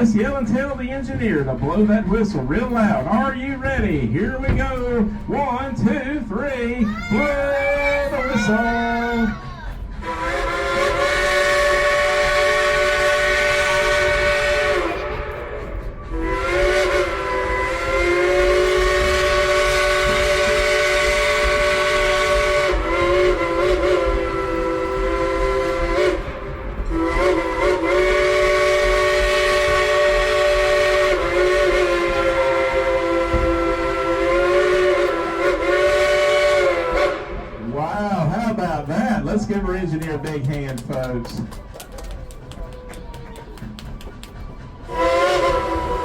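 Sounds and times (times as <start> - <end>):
low rumble of moving train: 0.0 - 46.0
steam locomotive chime whistle: 10.0 - 37.4, 44.9 - 46.0.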